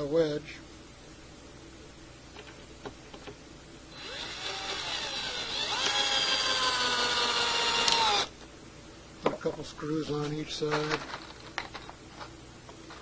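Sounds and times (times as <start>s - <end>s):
cordless drill motor: 3.9s - 8.3s.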